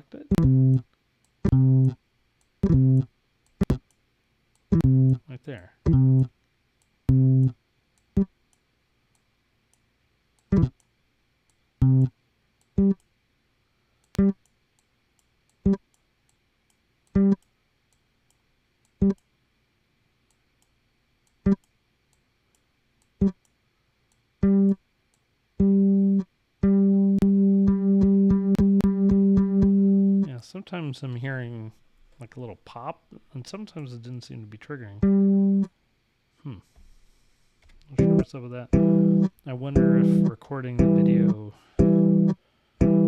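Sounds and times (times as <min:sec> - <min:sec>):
plucked guitar-like notes: 0:00.3 - 0:00.8, 0:01.5 - 0:01.9, 0:02.6 - 0:03.0, 0:04.7 - 0:05.2, 0:05.9 - 0:06.3, 0:25.6 - 0:30.3, 0:35.0 - 0:35.7, 0:38.0 - 0:43.0.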